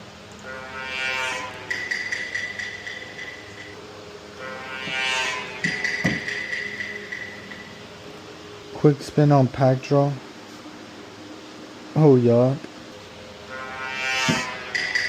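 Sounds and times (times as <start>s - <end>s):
pitch-sweeping electronic tone: 0.4s - 8.4s, 13.2s - 15.0s
high ringing tone: 0.4s - 8.5s, 13.3s - 15.0s.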